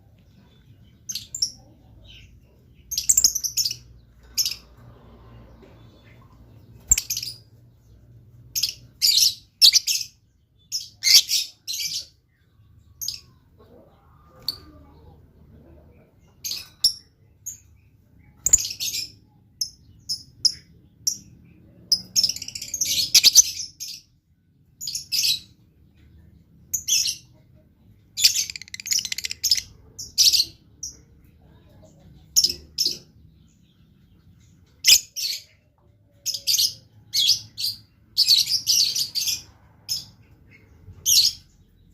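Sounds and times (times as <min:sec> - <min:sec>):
lovebird chirping and twittering: 0:00.4 - 0:04.8, 0:05.9 - 0:07.6, 0:08.5 - 0:12.2, 0:16.4 - 0:24.2, 0:28.1 - 0:31.0, 0:34.7 - 0:35.6, 0:36.2 - 0:41.9.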